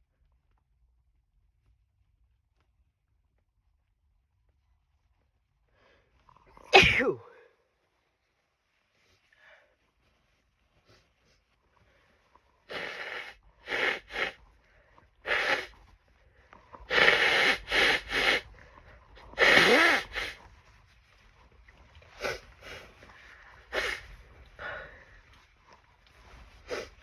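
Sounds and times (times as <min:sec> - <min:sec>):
person sneezing: 0:06.7 - 0:07.3, 0:12.7 - 0:14.3, 0:15.3 - 0:15.7, 0:16.9 - 0:18.4, 0:19.3 - 0:20.4, 0:23.7 - 0:24.8
person sniffing: 0:12.7 - 0:14.4, 0:15.3 - 0:15.8, 0:16.9 - 0:18.5, 0:19.2 - 0:20.4, 0:22.2 - 0:22.9, 0:23.7 - 0:25.0, 0:26.6 - 0:27.0.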